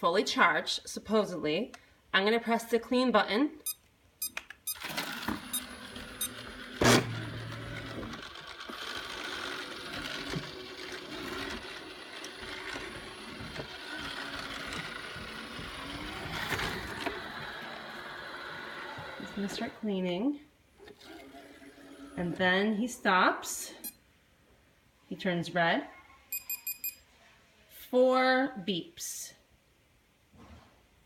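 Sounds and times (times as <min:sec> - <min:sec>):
robot vacuum motors and brushes: 0:04.8 - 0:19.9, 0:20.8 - 0:22.6.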